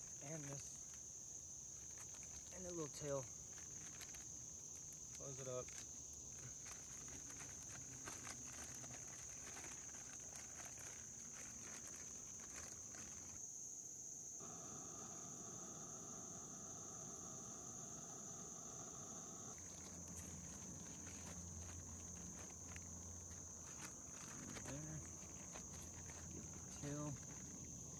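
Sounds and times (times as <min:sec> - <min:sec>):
faint ticks and rustles: 0:00.0 - 0:13.5, 0:19.2 - 0:27.9
insect chorus chirring: 0:00.0 - 0:27.9.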